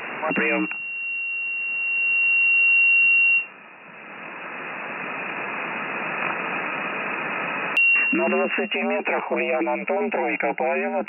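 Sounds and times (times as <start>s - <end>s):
radio static hiss: 0.0s - 0.8s, 3.8s - 11.0s
high-pitched radio whistle: 0.2s - 3.5s, 7.8s - 8.8s.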